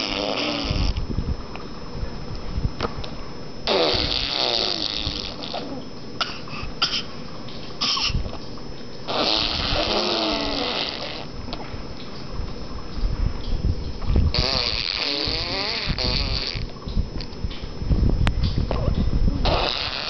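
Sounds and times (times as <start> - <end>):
baby blowing raspberries: 0.0 - 1.0, 3.6 - 7.1, 7.8 - 8.3, 9.1 - 11.3, 14.3 - 16.7, 19.4 - 20.0.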